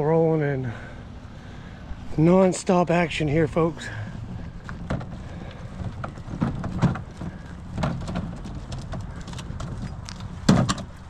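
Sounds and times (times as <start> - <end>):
irregular knocks and clatter: 4.3 - 11.0.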